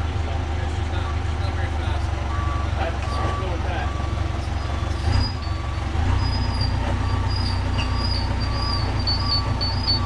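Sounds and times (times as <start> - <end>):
engine running: 0.0 - 10.0
high squeal: 4.4 - 10.0.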